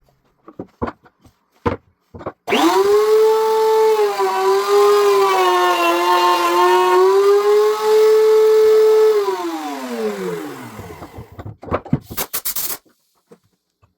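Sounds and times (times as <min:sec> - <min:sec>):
wood router whining: 0:02.5 - 0:11.4.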